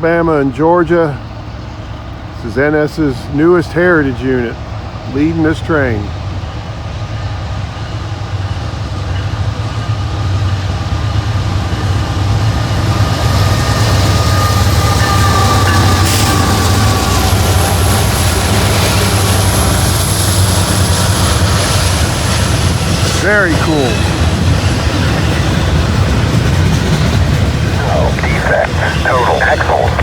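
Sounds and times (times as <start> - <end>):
locomotive engine hum: 0.0 - 30.0
train rumble: 0.0 - 30.0.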